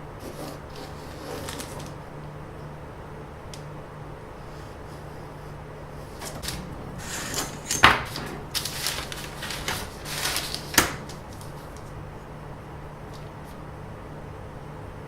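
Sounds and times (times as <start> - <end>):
low steady hum: 0.0 - 15.0
handling rustling and scraping: 0.1 - 2.0, 6.0 - 12.0.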